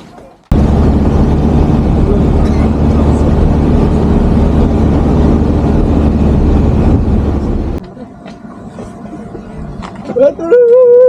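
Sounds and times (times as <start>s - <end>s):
vehicle engine hum: 0.5s - 11.0s.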